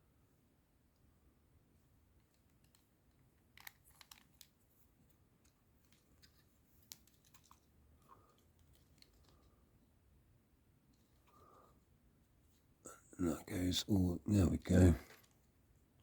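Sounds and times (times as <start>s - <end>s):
plastic pieces clicking: 3.4s - 4.6s.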